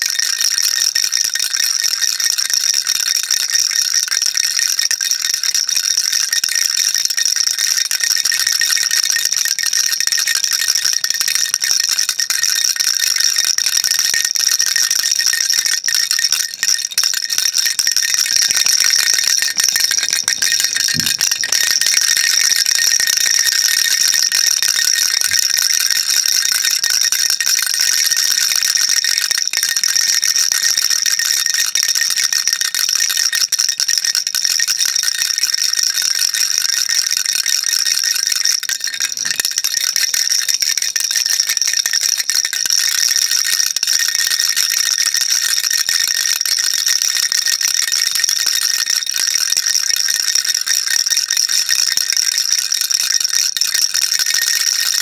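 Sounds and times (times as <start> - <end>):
baby rattle shaking: 5.4 - 33.2, 33.8 - 42.9.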